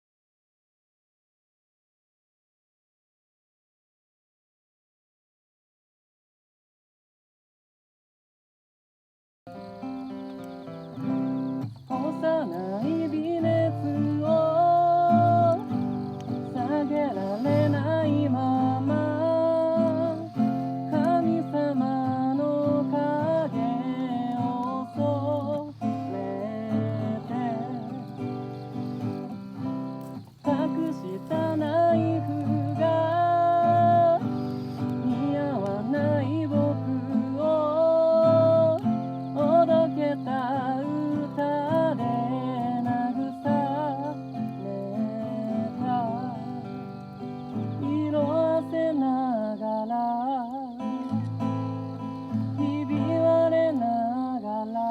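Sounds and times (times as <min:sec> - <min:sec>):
acoustic guitar: 0:09.5 - 0:54.9
person singing slow melody: 0:11.0 - 0:29.8, 0:30.4 - 0:54.9
person singing held notes: 0:14.4 - 0:22.4.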